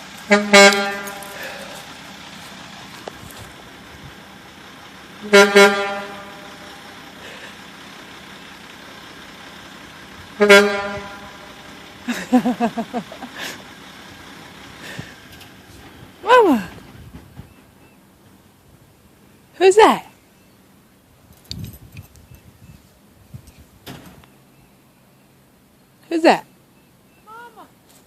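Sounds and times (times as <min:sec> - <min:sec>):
truck horn blasts: 0:00.1 - 0:02.0, 0:05.1 - 0:07.2, 0:10.2 - 0:12.1.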